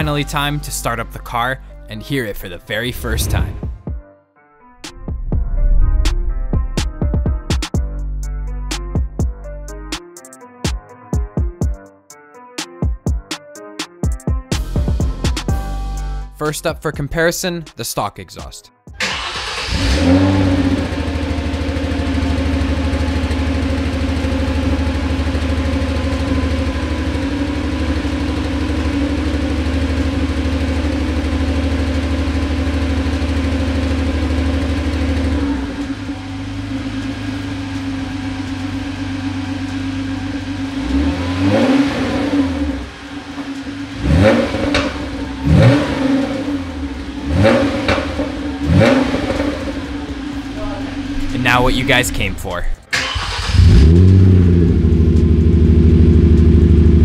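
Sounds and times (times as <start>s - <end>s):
car engine revving: 2.7s - 4.0s, 4.8s - 7.6s, 19.0s - 57.0s
car engine idling: 19.0s - 57.0s.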